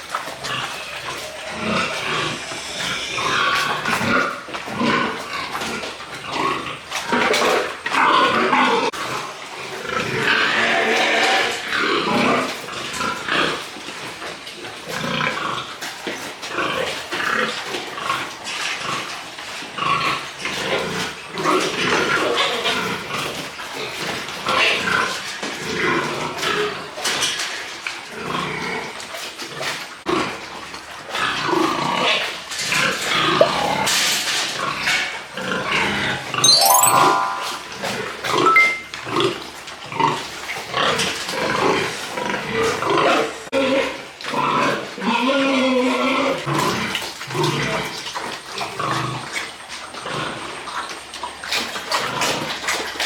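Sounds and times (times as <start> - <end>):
pigs vocalising: 0.1 - 13.7.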